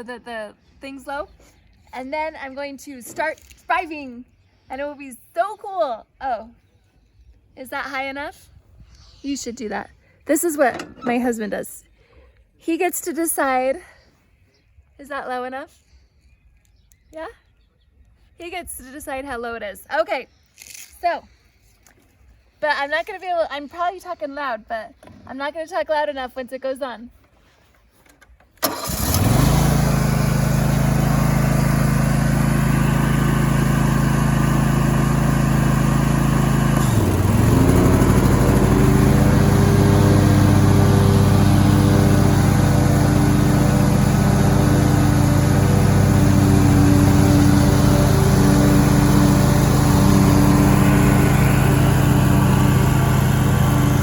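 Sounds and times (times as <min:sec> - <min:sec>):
lawn mower engine running: 0:10.6 - 0:11.3, 0:28.6 - 0:54.0.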